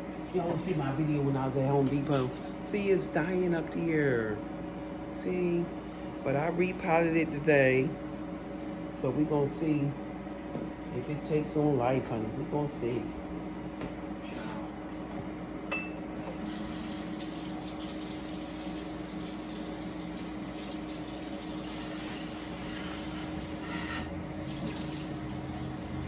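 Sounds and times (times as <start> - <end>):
water filling a container: 16.3 - 23.6, 24.3 - 26.0.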